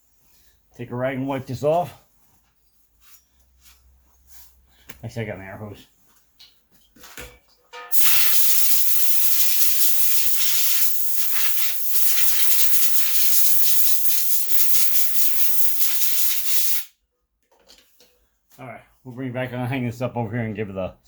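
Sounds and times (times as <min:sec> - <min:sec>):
compressed air hissing from hose: 0:07.9 - 0:16.9.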